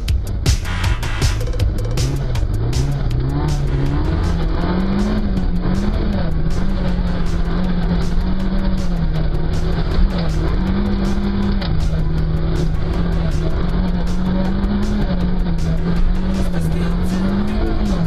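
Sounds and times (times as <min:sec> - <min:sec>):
vehicle engine revving: 0:00.0 - 0:18.0.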